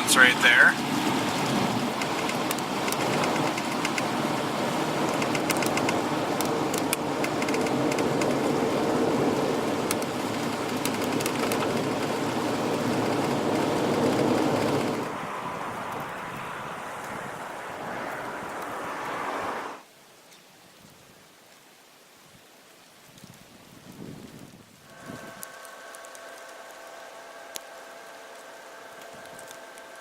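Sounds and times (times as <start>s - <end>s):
car tyres and engine rumbling: 0.0s - 19.8s, 24.8s - 30.0s
sharp ticks: 1.3s - 4.2s, 4.9s - 8.4s, 9.8s - 15.1s, 24.9s - 30.0s.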